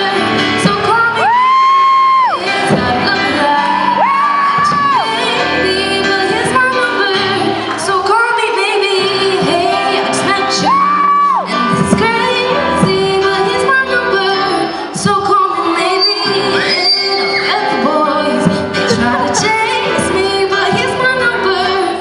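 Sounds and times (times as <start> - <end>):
pop song with singing: 0.0 - 22.0.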